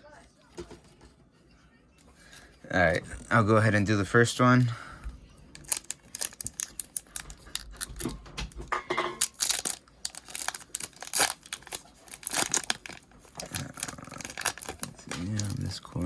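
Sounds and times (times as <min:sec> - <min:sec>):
plastic packaging tearing and crinkling: 0:05.5 - 0:08.2, 0:09.2 - 0:16.0.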